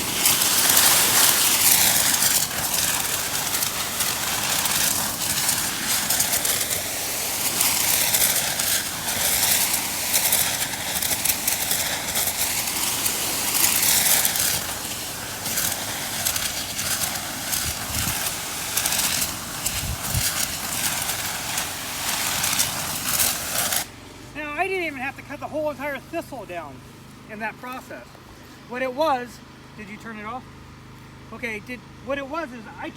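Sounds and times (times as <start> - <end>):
pressure washer running: 0.0 - 32.9
water jet blasting plants: 0.0 - 32.9.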